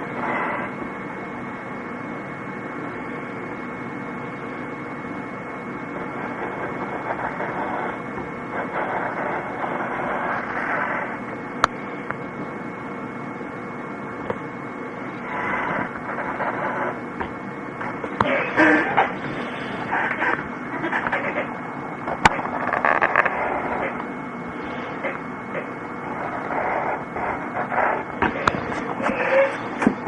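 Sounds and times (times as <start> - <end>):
faint electrical hum: 0.0 - 30.0
pen scratching on paper: 6.0 - 11.2, 15.2 - 17.0, 22.3 - 24.0, 26.1 - 29.7.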